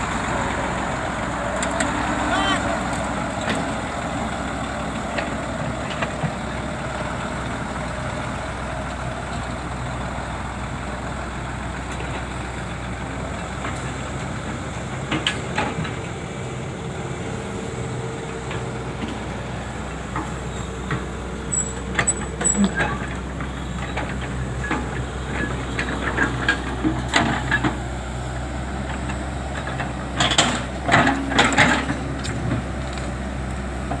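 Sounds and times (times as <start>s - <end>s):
diesel engine idling: 0.0s - 34.0s
knocks and clanks: 29.0s - 33.0s.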